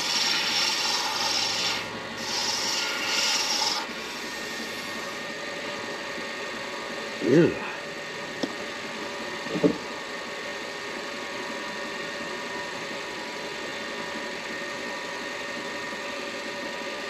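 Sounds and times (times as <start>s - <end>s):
wood lathe motor humming: 0.0s - 6.0s.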